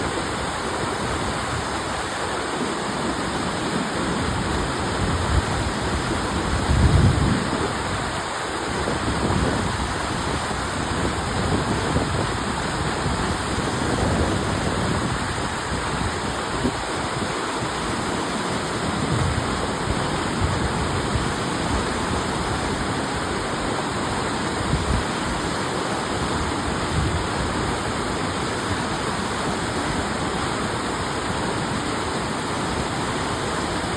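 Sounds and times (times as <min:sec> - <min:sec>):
rushing water: 0:00.0 - 0:33.9.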